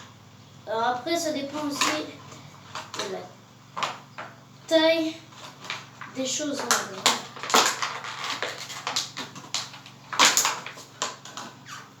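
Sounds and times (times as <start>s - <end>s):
plastic bottle crinkling: 1.5s - 4.3s, 5.3s - 11.8s.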